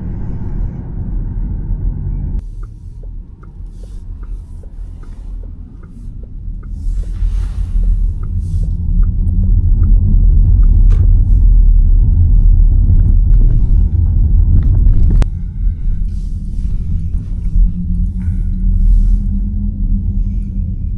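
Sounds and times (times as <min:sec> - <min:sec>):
road and tyre rumble: 0:00.0 - 0:20.9
faint regular ticking: 0:02.4 - 0:07.2, 0:07.8 - 0:10.8.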